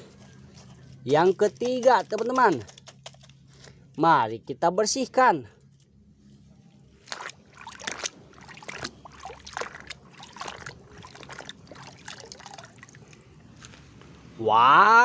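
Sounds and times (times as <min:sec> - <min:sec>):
water sloshing and splashing: 0:06.9 - 0:14.4.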